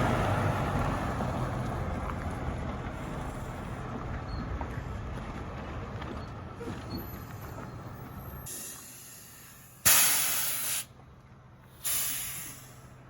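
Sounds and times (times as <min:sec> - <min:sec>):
low engine rumble: 0:00.0 - 0:13.0
bursts of hissing: 0:09.9 - 0:10.9.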